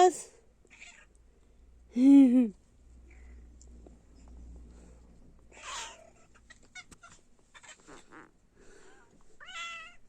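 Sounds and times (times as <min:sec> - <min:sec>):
kittens mewing: 0:05.5 - 0:08.4.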